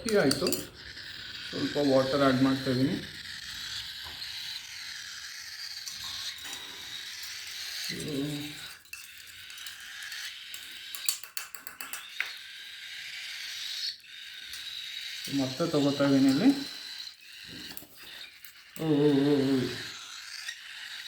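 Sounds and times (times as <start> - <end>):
spoon clinking in cup: 0.0 - 0.8, 7.9 - 12.3
chicks begging calls: 0.0 - 8.6, 15.2 - 18.2.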